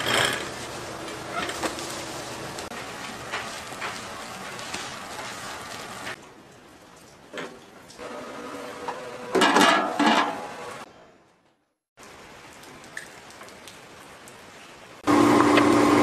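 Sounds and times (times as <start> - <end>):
metal utensils and dishes clattering: 9.4 - 10.5.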